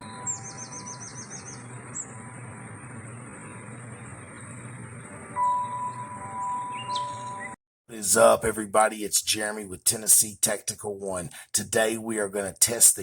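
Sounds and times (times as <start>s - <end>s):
steady outdoor hiss: 0.0s - 5.6s, 7.9s - 13.0s
songbird singing: 0.0s - 7.6s
loud steady tone: 0.0s - 13.0s.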